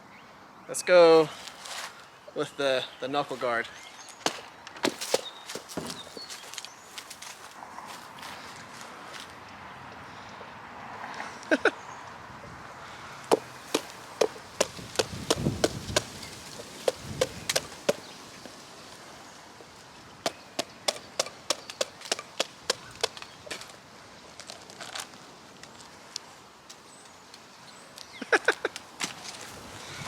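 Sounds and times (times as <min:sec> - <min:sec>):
cleaver chopping into squash: 0:04.2 - 0:06.0, 0:13.3 - 0:16.1, 0:16.8 - 0:18.0, 0:20.2 - 0:23.2
wind rumble on microphone: 0:13.5 - 0:18.2, 0:29.4 - 0:30.0.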